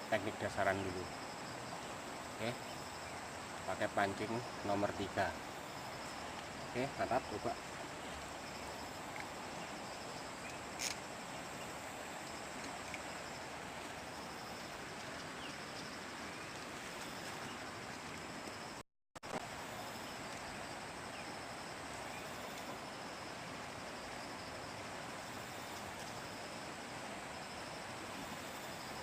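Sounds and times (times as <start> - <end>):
even hiss: 0.0 - 17.8
insects chirping: 0.0 - 29.0.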